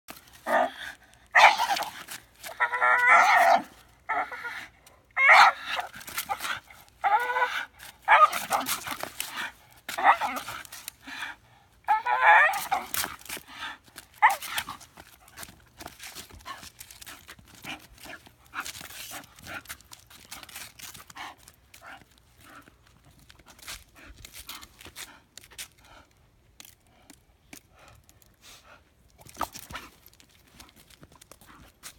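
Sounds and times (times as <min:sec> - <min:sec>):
dog yelp: 0:01.4 - 0:01.9, 0:02.6 - 0:04.5, 0:05.2 - 0:06.4, 0:07.0 - 0:08.7, 0:14.2 - 0:14.5
dog wavering cry: 0:01.4 - 0:04.6, 0:05.2 - 0:06.4, 0:07.0 - 0:08.7, 0:10.0 - 0:10.5, 0:11.9 - 0:12.9, 0:14.2 - 0:14.5.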